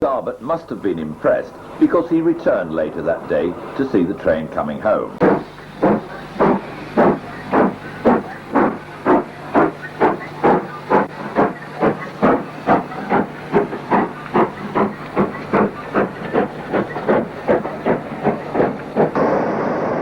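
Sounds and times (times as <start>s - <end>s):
steam locomotive exhaust beats: 0.0s - 20.0s
steam hiss: 5.2s - 20.0s.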